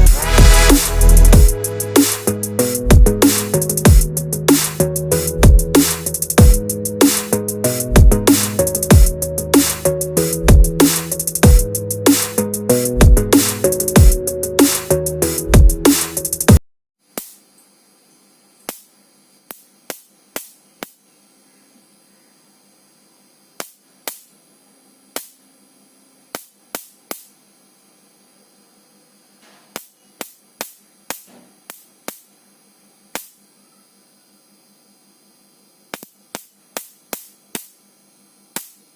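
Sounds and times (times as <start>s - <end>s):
faint electrical hum: 17.0s - 38.9s.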